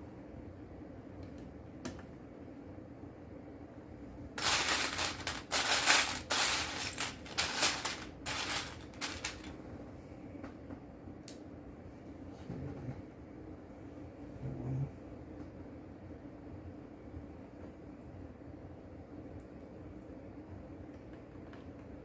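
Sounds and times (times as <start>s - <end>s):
plastic bricks clattering: 4.4s - 9.5s.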